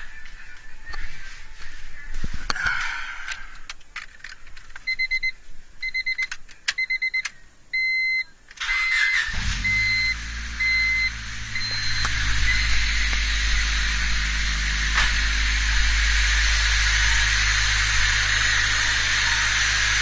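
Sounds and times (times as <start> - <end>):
electronic beeps: 4.8 - 13.9
car engine cranking and idling: 8.4 - 20.0.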